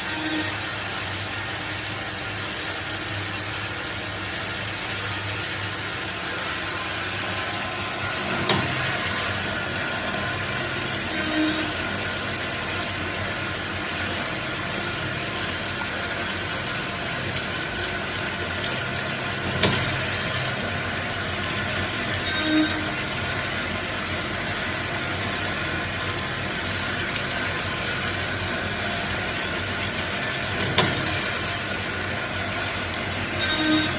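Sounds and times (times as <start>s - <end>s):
lathe humming and hissing: 5.1s - 33.9s
sharp machine clack: 19.5s - 20.6s, 30.4s - 31.8s.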